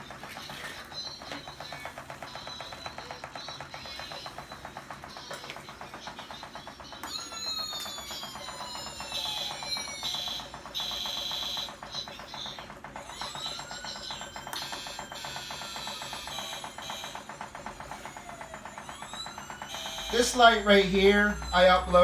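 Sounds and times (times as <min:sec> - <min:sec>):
tinny electronic tune: 0:13.1 - 0:22.0
bright beeping notes: 0:17.8 - 0:22.0.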